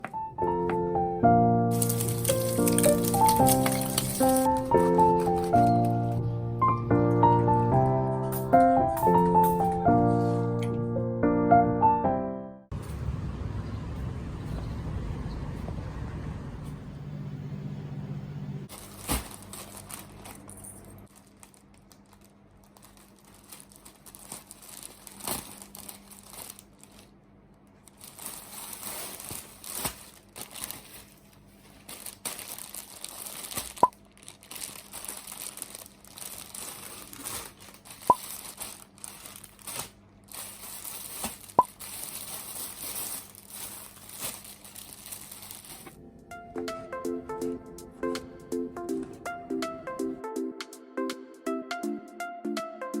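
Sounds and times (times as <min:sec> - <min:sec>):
crinkling and rustling handling: 0:01.7 - 0:06.2, 0:07.8 - 0:10.8, 0:18.7 - 0:46.0.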